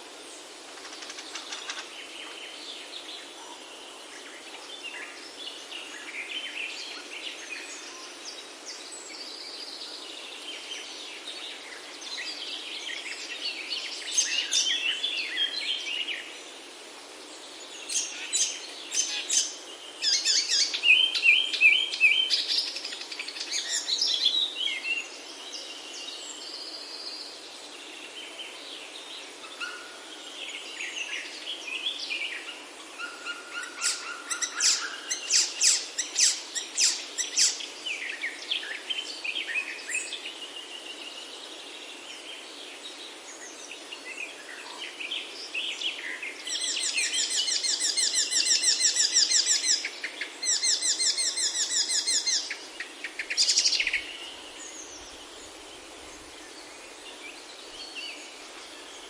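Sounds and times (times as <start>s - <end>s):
soft background hiss: 0.0s - 59.0s
songbirds singing and calling: 0.0s - 59.0s.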